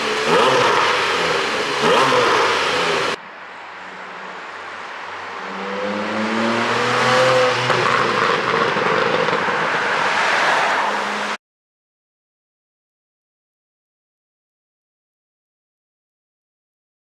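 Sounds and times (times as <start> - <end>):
sports car engine revving: 0.0 - 3.2, 5.2 - 11.4.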